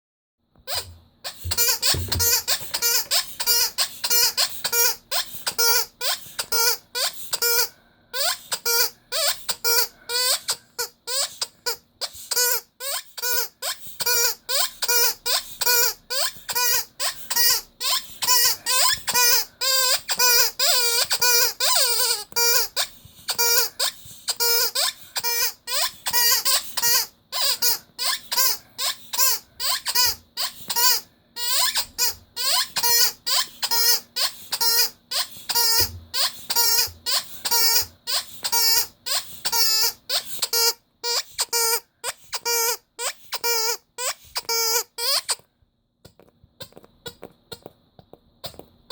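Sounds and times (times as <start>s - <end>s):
rubber squeaky toy squeaking: 0.6s - 45.5s.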